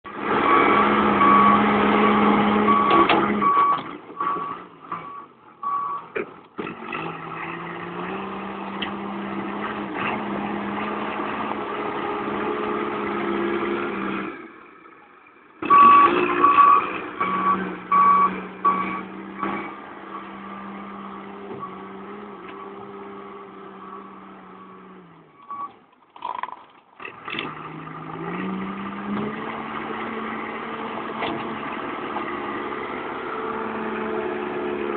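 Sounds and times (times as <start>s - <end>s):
heavy vehicle engine running: 0.1s - 25.8s, 27.0s - 34.9s
reversing alarm beeping: 0.5s - 6.0s, 15.7s - 19.6s.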